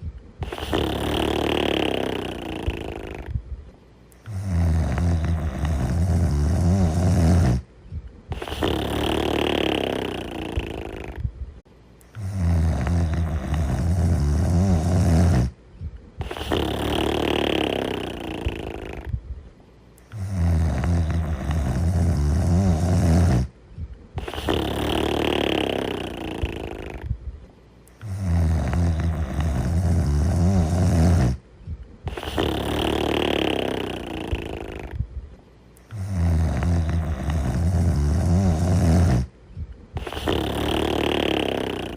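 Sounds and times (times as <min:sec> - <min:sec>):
person snoring: 0:00.4 - 0:03.4, 0:04.2 - 0:07.7, 0:08.3 - 0:11.3, 0:12.1 - 0:15.6, 0:16.2 - 0:19.2, 0:20.0 - 0:23.5, 0:24.2 - 0:27.2, 0:27.9 - 0:31.4, 0:32.1 - 0:35.0, 0:35.8 - 0:39.3, 0:40.0 - 0:41.9.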